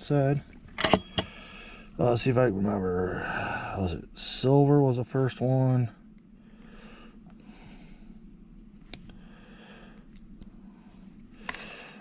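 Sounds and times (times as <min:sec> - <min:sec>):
soft breathing: 0:01.0 - 0:02.0, 0:03.0 - 0:04.1, 0:06.2 - 0:12.0.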